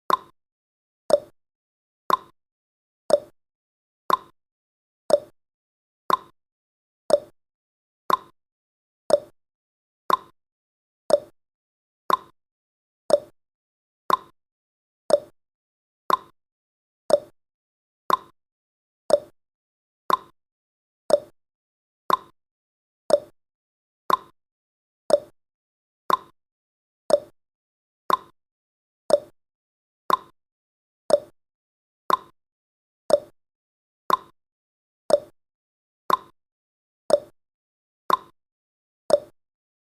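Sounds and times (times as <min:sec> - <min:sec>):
timer ticking: 0:00.1 - 0:00.3, 0:01.1 - 0:01.3, 0:02.1 - 0:02.3, 0:03.1 - 0:03.4, 0:04.1 - 0:04.3, 0:05.1 - 0:05.3, 0:06.1 - 0:06.3, 0:07.1 - 0:07.4, 0:08.1 - 0:08.3, 0:09.1 - 0:09.4, 0:10.1 - 0:10.3, 0:11.1 - 0:11.4, 0:12.1 - 0:12.3, 0:13.1 - 0:13.4, 0:14.1 - 0:14.3, 0:15.1 - 0:15.4, 0:16.1 - 0:16.4, 0:17.1 - 0:17.4, 0:18.1 - 0:18.4, 0:19.1 - 0:19.4, 0:20.1 - 0:20.4, 0:21.1 - 0:21.4, 0:22.1 - 0:22.4, 0:23.1 - 0:23.4, 0:24.1 - 0:24.3, 0:25.1 - 0:25.4, 0:26.1 - 0:26.4, 0:27.1 - 0:27.4, 0:28.1 - 0:28.4, 0:29.1 - 0:29.4, 0:30.1 - 0:30.4, 0:31.1 - 0:31.4, 0:32.1 - 0:32.4, 0:33.1 - 0:33.4, 0:34.1 - 0:34.4, 0:35.1 - 0:35.4, 0:36.1 - 0:36.4, 0:37.1 - 0:37.4, 0:38.1 - 0:38.4, 0:39.1 - 0:39.4.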